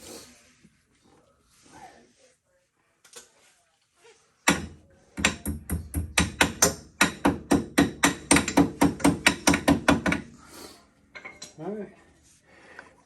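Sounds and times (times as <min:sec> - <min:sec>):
small hammer striking metal: 0:04.5 - 0:10.3.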